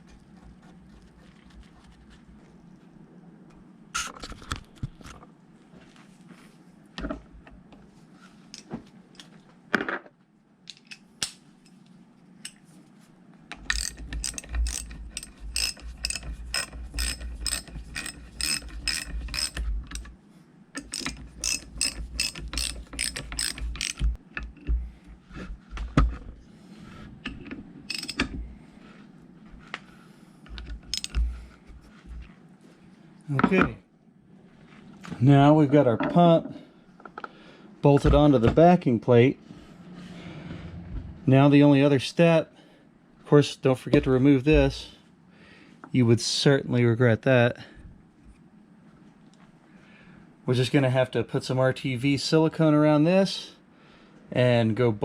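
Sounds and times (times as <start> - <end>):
tools and metal parts knocking: 13.5 - 20.1, 20.8 - 24.7, 27.9 - 28.4, 30.5 - 31.3
ratchet wrench clicking: 13.7 - 20.0, 20.8 - 24.2, 27.9 - 28.2, 30.9 - 31.2.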